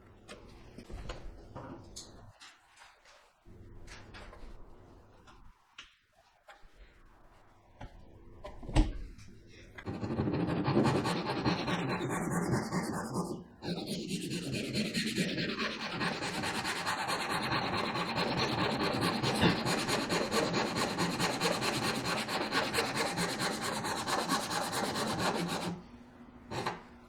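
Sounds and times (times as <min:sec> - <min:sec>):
hand saw rasping through wood: 0:09.9 - 0:25.8.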